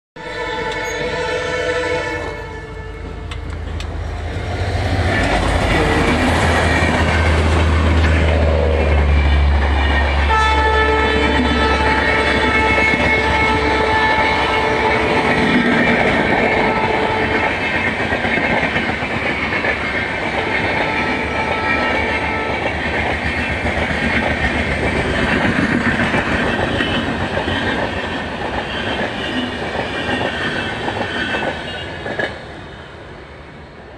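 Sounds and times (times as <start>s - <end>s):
train horn: 0.2s - 3.3s, 8.6s - 17.8s, 20.3s - 22.8s
locomotive heavy low drone: 2.6s - 17.2s
train wheels clattering: 3.2s - 32.4s.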